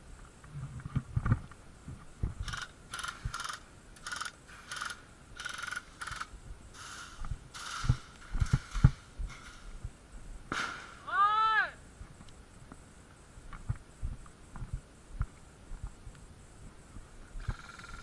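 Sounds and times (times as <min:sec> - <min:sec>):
airsoft guns firing bursts: 0:02.4 - 0:09.0.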